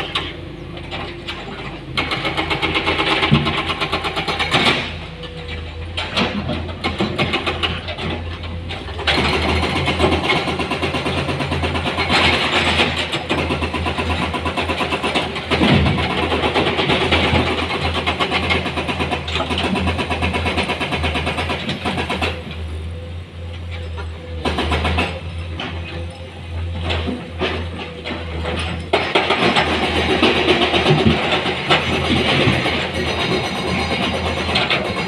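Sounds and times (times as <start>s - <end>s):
heavy diesel engine droning: 22.2s - 33.0s.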